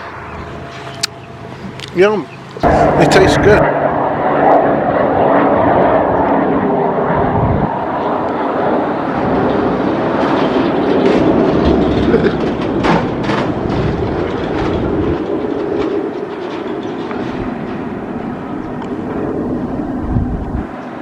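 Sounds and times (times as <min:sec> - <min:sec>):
mechanical rumble with low drone: 0:00.0 - 0:20.9
clacks and knocks: 0:10.2 - 0:17.9.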